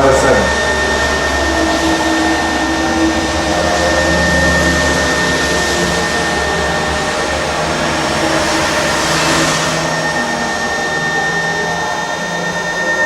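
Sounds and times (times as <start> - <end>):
cnc router motors whirring: 0.0 - 13.0.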